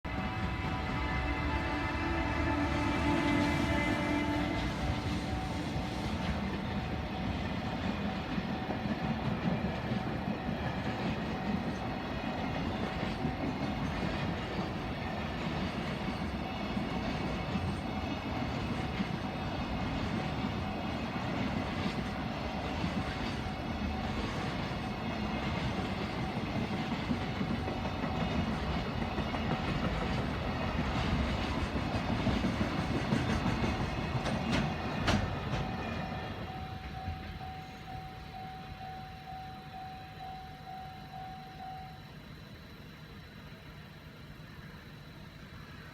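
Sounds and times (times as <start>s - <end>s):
crossing warning bell ringing: 0.1s - 12.1s, 35.1s - 42.2s
train wheels clattering over rails: 0.1s - 38.0s.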